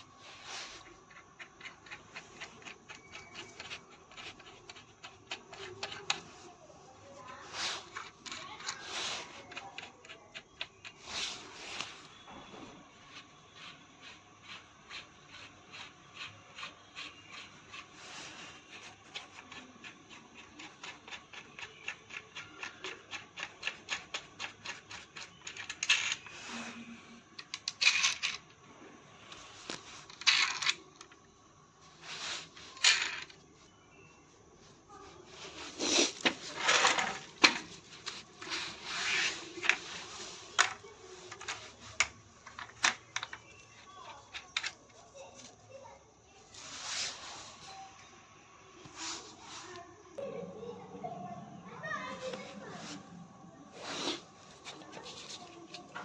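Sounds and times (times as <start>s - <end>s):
parts scraping and knocking: 0.0s - 13.4s, 20.8s - 31.3s, 31.9s - 33.5s, 35.2s - 45.6s, 53.8s - 56.0s.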